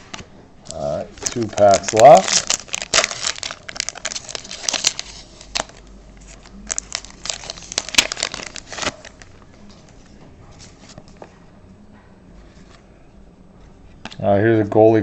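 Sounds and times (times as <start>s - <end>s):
foil wrapper tearing and crinkling: 0.7s - 5.8s, 6.4s - 9.3s.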